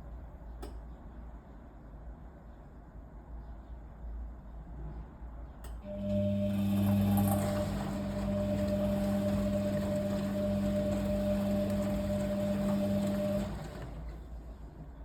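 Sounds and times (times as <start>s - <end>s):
washing machine humming: 5.8s - 15.0s.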